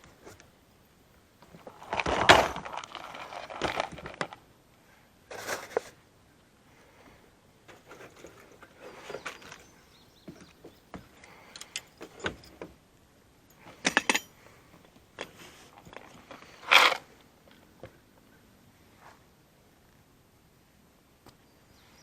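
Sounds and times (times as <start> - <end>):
handling noise clicks and rattles: 1.4 - 4.4, 7.7 - 12.8, 13.5 - 17.7.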